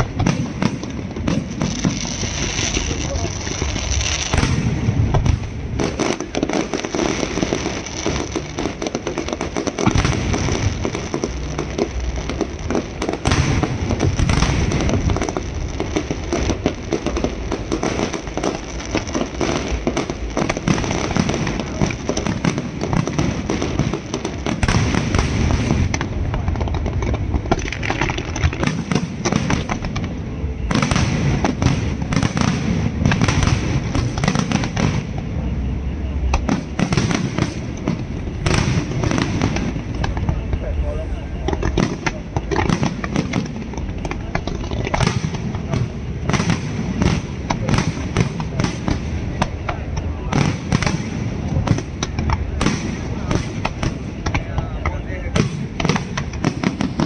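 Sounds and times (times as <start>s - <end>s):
fireworks cracking and banging: 0.0s - 57.0s.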